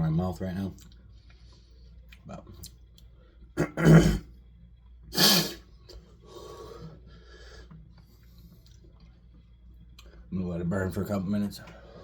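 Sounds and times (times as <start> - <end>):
man sneezing or coughing: 3.6 - 4.3, 5.1 - 5.6
heavy breathing: 5.9 - 8.5.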